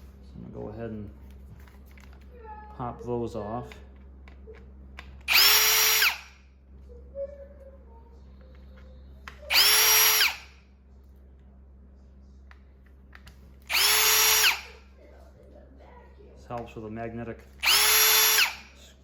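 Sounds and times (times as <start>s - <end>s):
cordless drill motor whining: 5.2s - 6.4s, 9.4s - 10.6s, 13.6s - 14.8s, 17.6s - 18.8s.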